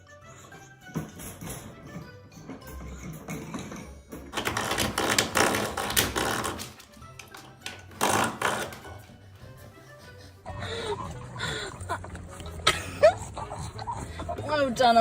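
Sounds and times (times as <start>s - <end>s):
background music: 0.0s - 15.0s
clattering scraping noise: 0.4s - 9.3s.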